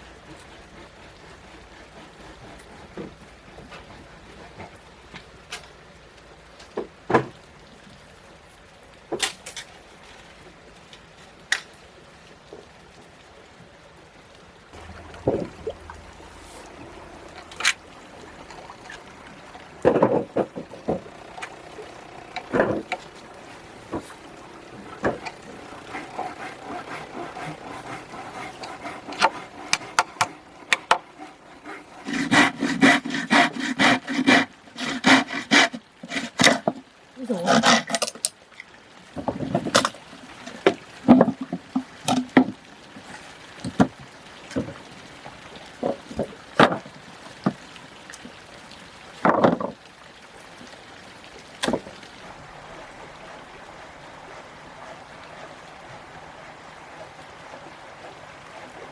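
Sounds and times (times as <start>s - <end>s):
wood knocking: 14.8s - 36.8s.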